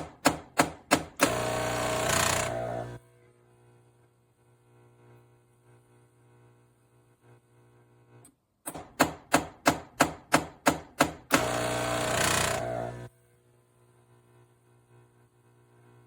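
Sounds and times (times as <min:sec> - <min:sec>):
espresso machine sharp bangs: 0:00.0 - 0:02.7, 0:08.7 - 0:12.8
espresso machine loud buzz: 0:01.2 - 0:03.6, 0:11.3 - 0:16.0.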